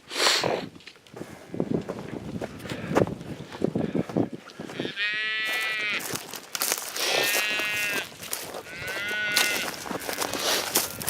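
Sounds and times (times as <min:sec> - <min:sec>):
calves bawling: 0:03.8 - 0:11.0.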